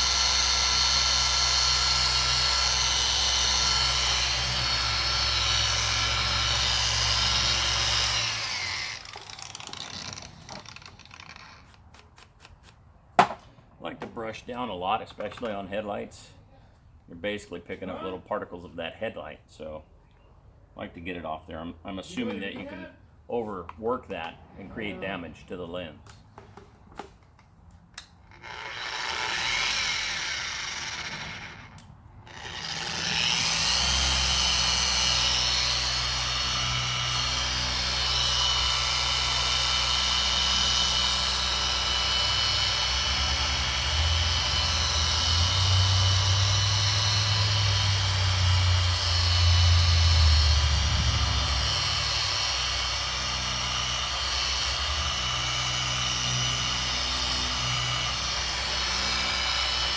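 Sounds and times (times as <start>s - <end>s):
electric polisher whining: 0.0s - 11.8s, 28.3s - 59.9s.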